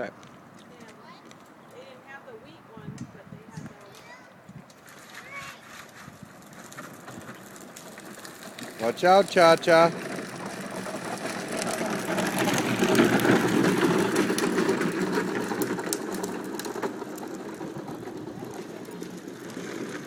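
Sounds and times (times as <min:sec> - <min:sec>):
bike rattling whir: 0:00.0 - 0:20.0.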